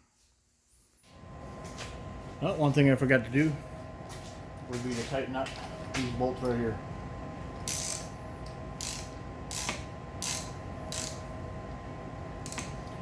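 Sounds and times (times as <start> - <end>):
ratchet wrench ratcheting: 7.6 - 8.2, 8.8 - 11.2, 12.4 - 12.8.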